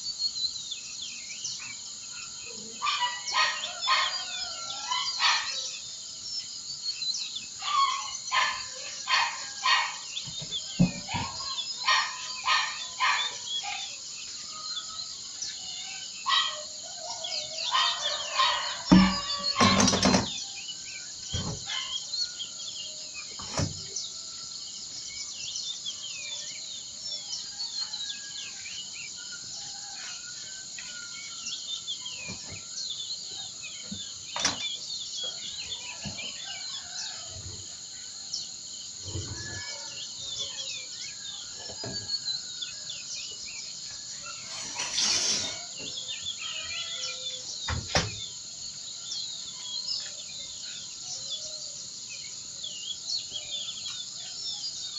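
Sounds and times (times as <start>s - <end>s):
songbirds chirping and twittering: 0.0s - 54.9s
soft knocks: 18.9s - 20.3s.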